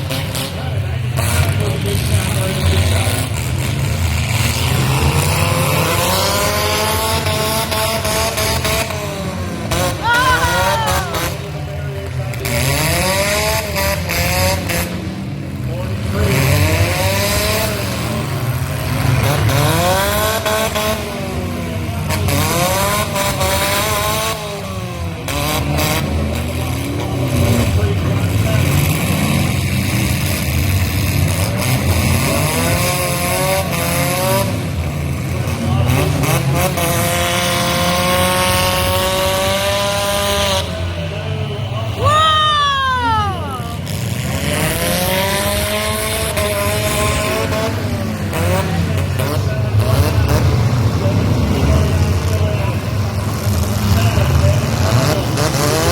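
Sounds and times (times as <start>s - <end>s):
car engines revving hard: 0.0s - 55.9s
low rumble of engines: 0.0s - 55.9s.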